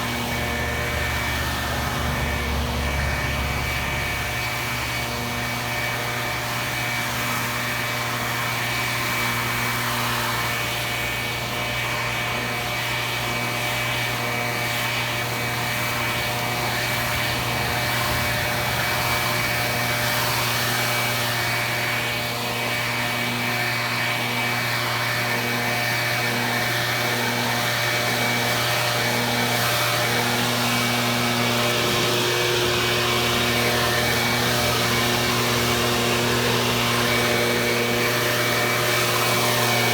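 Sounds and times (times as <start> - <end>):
small gasoline engine running: 0.0 - 39.9.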